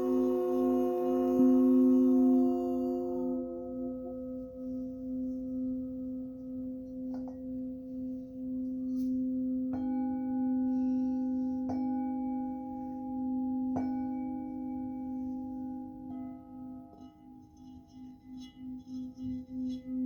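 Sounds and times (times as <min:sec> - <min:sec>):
singing bowl strikes: 0:00.0 - 0:04.4
singing bowl ringing: 0:00.0 - 0:20.0.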